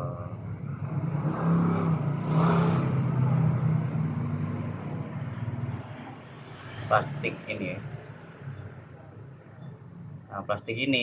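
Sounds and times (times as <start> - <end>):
vehicle engine droning: 0.0 - 10.3.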